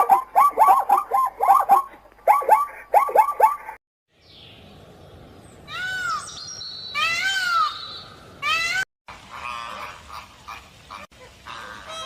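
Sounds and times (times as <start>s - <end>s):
bird calling: 0.0s - 3.8s.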